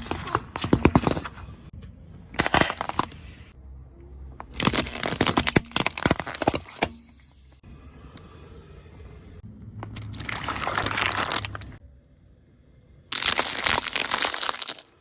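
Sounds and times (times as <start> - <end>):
objects crushed under car tyre: 4.5 - 6.9, 10.1 - 11.8, 13.1 - 15.0.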